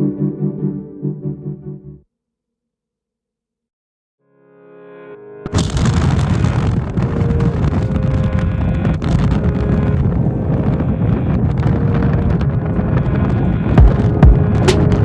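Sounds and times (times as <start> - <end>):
wind buffeting microphone: 5.5 - 15.0.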